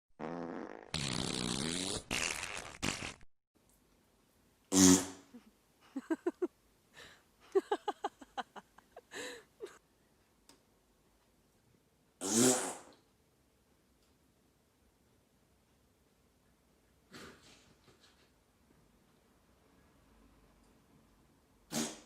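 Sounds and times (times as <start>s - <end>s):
farting: 0.2s - 3.2s, 4.7s - 5.3s, 12.2s - 13.0s, 21.7s - 22.0s.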